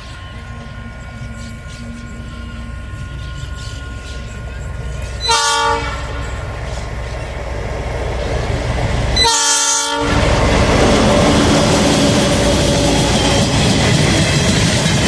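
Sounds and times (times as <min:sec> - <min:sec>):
rail noise: 0:00.0 - 0:15.0
locomotive air horn: 0:05.2 - 0:06.5, 0:09.2 - 0:13.6
diesel engine rumble: 0:10.0 - 0:15.0.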